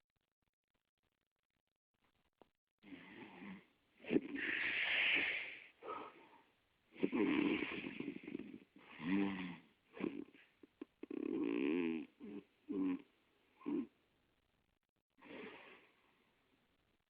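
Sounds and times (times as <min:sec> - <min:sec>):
person snoring: 0:02.8 - 0:06.2, 0:07.0 - 0:13.9.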